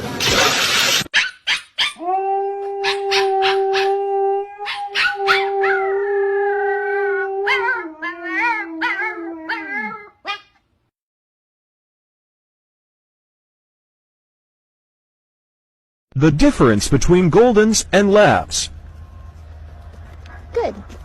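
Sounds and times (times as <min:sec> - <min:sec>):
dog yipping: 0:01.1 - 0:02.0, 0:02.8 - 0:04.0, 0:04.6 - 0:05.8, 0:07.5 - 0:10.6
dog howling: 0:01.8 - 0:10.2.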